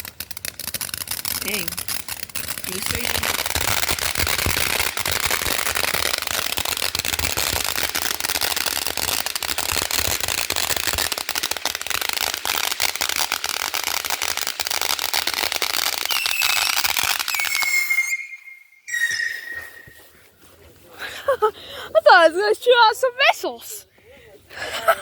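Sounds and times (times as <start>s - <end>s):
firework crackling and popping: 0.0s - 20.1s
whistling tone: 16.1s - 20.1s.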